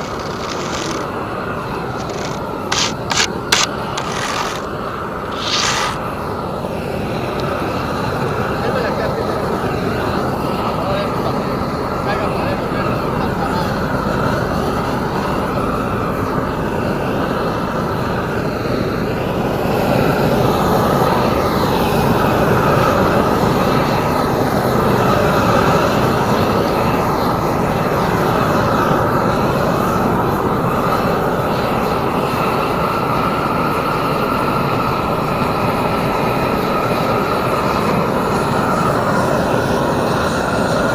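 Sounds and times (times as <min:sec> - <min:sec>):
paving machinery rumbling: 0:00.0 - 0:17.1.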